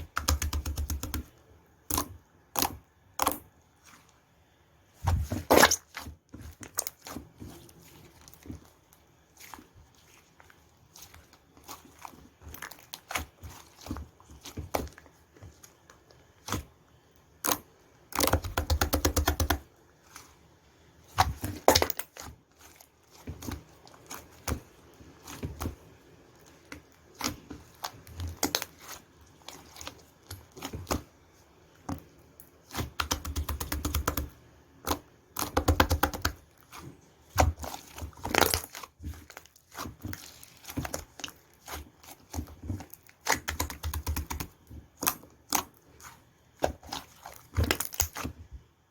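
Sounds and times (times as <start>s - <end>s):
slime squishing with clicks and pops: 0.0s - 3.6s, 11.7s - 19.7s, 21.1s - 22.4s, 23.2s - 31.1s, 31.7s - 48.5s.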